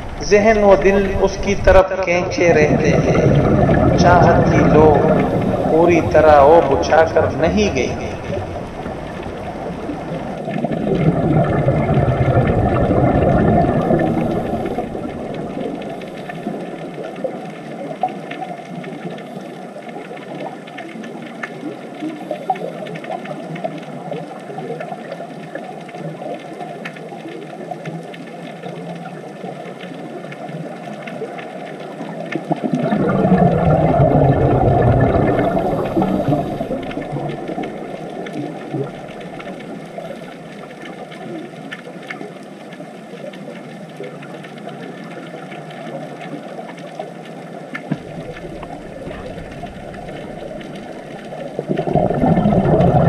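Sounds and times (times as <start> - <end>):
low underwater rush: 0.0 - 53.0
underwater crackling hiss: 0.0 - 53.0.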